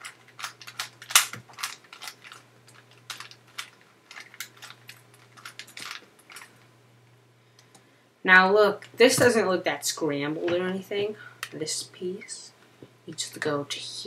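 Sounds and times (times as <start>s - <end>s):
puzzle cube plastic clicks: 0.0s - 6.5s.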